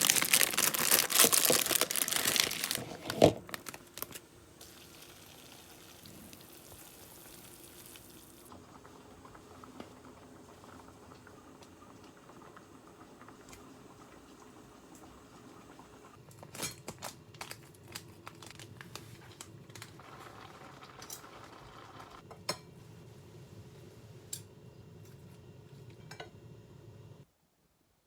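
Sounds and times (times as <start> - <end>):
small objects clinking: 0.0 - 4.2
low room hum: 0.0 - 28.0.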